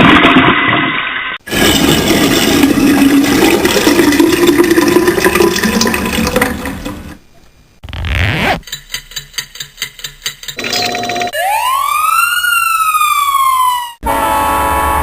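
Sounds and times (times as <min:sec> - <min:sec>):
toilet flushing: 0:00.0 - 0:07.2.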